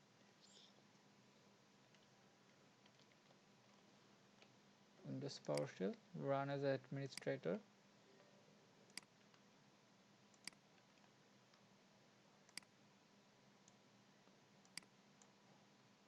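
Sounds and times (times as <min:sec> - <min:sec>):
computer mouse clicks: 0:02.8 - 0:03.8, 0:08.9 - 0:09.4, 0:10.3 - 0:11.7, 0:12.5 - 0:12.8, 0:14.6 - 0:15.4.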